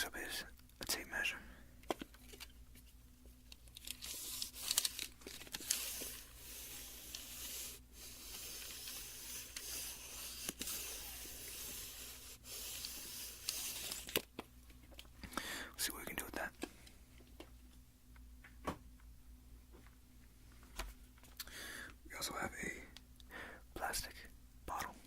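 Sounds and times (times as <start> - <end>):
tape measure blade scratchy hiss: 5.6 - 14.2.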